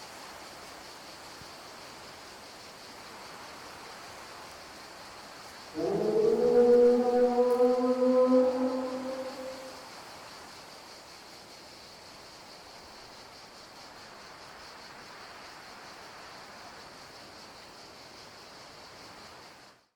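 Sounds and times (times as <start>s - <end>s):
faint background hiss: 0.0s - 19.9s
low drawn-out creature call: 5.8s - 9.8s.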